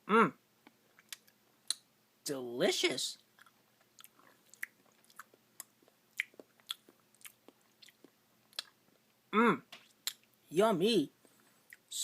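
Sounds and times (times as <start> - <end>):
person chewing crunchy food: 3.3 - 8.8
mouth clicks: 9.9 - 10.3.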